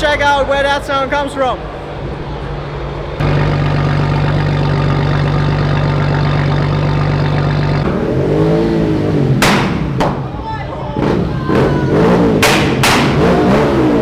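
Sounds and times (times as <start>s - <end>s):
car engine revving: 3.2s - 14.0s
loud sharp crack: 9.4s - 10.4s, 12.2s - 14.0s.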